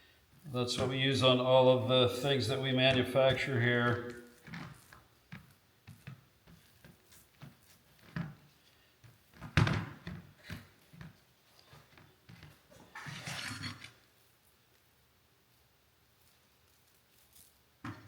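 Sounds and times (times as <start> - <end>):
wood rubbing and scraping: 11.8 - 14.0.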